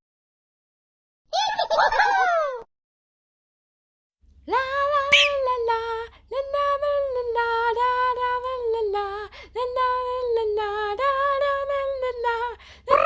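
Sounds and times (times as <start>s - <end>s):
high voice singing wordless tune: 4.5s - 13.0s.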